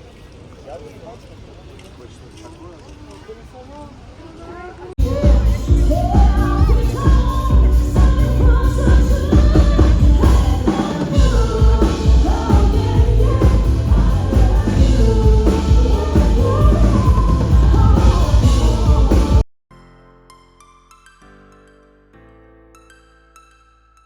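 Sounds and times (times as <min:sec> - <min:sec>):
drums: 0:05.0 - 0:19.4
heavy bass: 0:05.0 - 0:19.4
person singing: 0:05.0 - 0:19.4.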